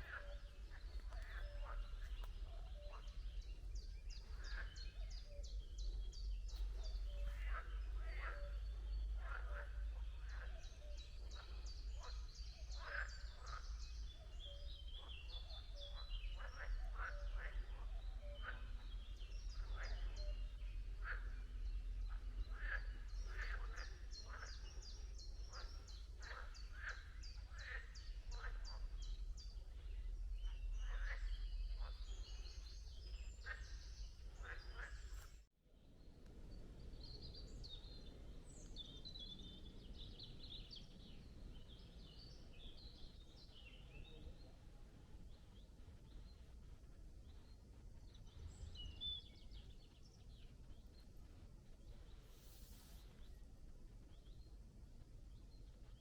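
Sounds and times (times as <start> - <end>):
frogs calling: 0.0 - 5.5
steady low rumble: 0.0 - 35.4, 36.0 - 56.0.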